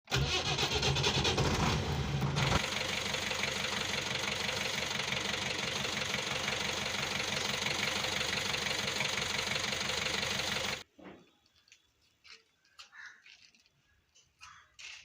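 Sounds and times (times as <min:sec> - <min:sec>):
diesel engine idling: 0:00.1 - 0:10.8.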